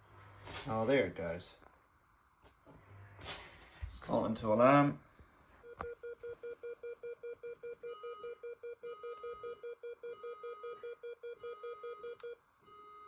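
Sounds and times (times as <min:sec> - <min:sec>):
higher alarm beep: 0:06.0 - 0:12.9.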